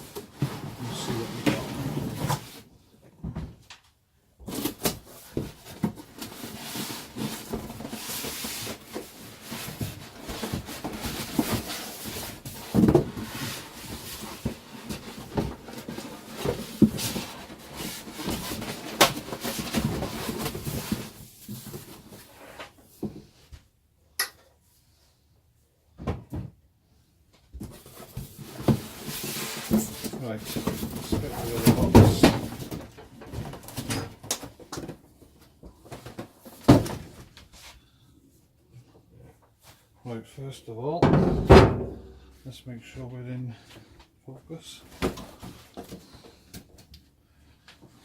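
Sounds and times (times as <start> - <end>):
cardboard and packaging rustling: 0.0 - 2.7, 4.4 - 23.4, 27.5 - 38.0, 44.8 - 46.9.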